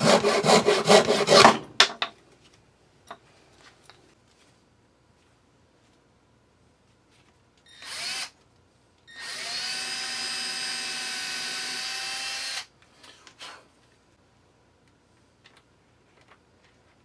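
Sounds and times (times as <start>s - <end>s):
power drill running: 7.7s - 8.3s, 9.1s - 12.7s.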